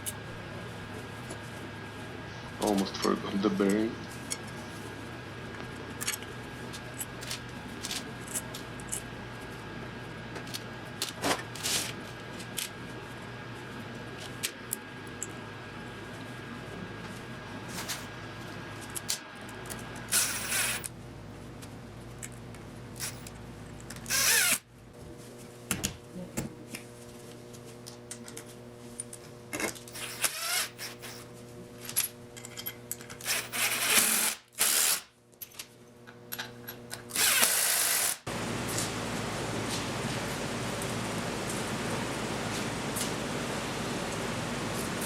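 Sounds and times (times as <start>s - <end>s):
power drill running: 37.1s - 38.3s.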